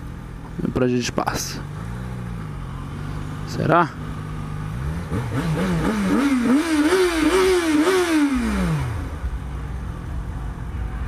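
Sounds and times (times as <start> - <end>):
motorcycle engine revving: 1.3 - 9.8.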